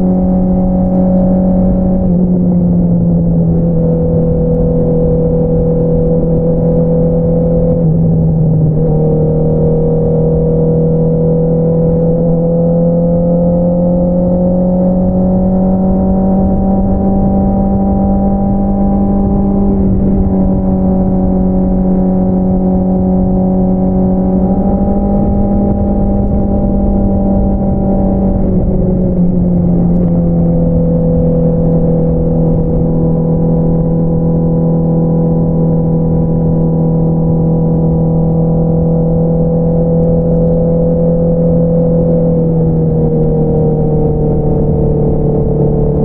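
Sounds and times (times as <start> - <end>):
motorcycle engine cruising: 0.0 - 46.0.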